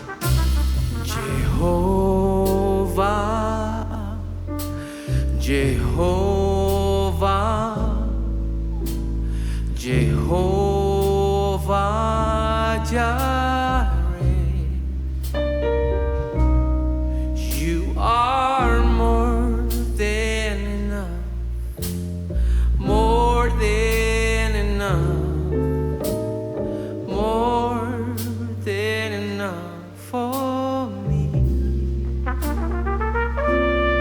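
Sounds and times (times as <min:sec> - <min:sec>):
drum and cymbal hits: 0:00.0 - 0:01.8
double bass line: 0:00.0 - 0:34.0
piano: 0:00.0 - 0:34.0.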